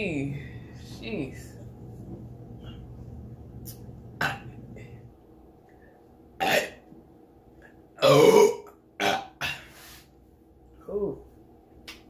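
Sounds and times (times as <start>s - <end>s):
woman burping: 6.4s - 6.8s, 8.0s - 9.7s.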